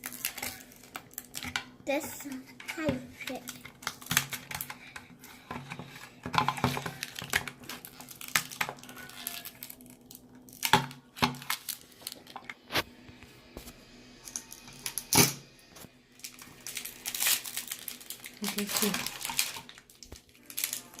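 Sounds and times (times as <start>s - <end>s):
wrappers crinkling: 0.0s - 1.6s, 5.8s - 12.8s, 16.2s - 21.0s.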